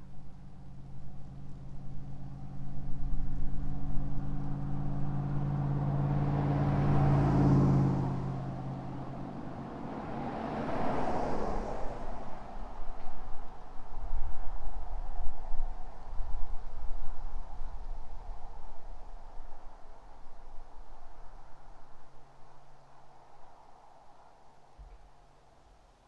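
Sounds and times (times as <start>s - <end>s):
car passing by: 3.1s - 25.1s
tyre and road noise: 4.3s - 13.8s.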